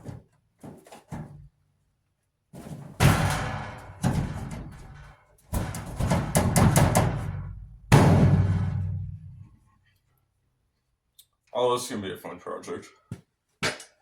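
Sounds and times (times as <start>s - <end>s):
sheet metal banging and clanging: 3.0s - 9.5s.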